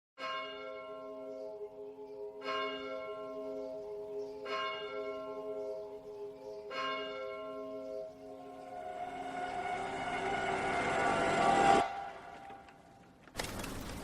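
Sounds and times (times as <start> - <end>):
bell tolling slowly: 2.4 - 12.8.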